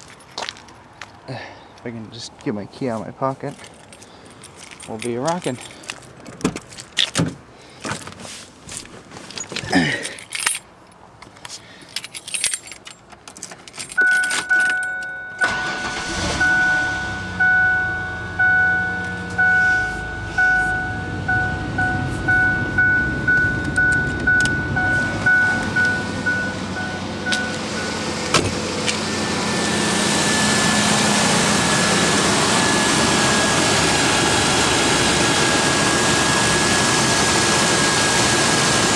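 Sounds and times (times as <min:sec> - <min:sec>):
keys jangling: 0:00.0 - 0:01.8, 0:03.4 - 0:07.2, 0:08.7 - 0:15.5, 0:22.1 - 0:29.0
car engine starting and idling: 0:12.7 - 0:38.9
car warning chime dinging: 0:13.8 - 0:33.8.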